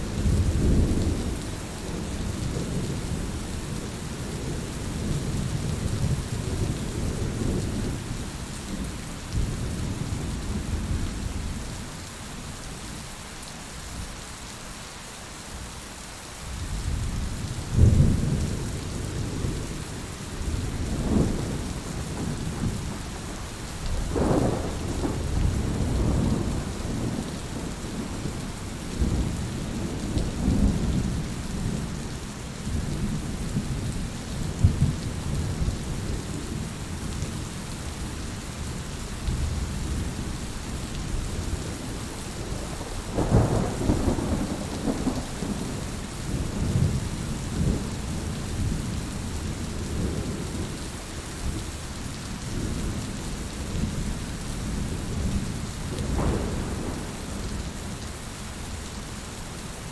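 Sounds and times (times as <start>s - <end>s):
steady rain: 0.0s - 59.9s
rolling thunder: 20.4s - 32.0s, 39.3s - 50.7s, 54.7s - 58.1s
thunderclap: 24.0s - 28.4s, 41.6s - 47.0s, 56.0s - 57.7s.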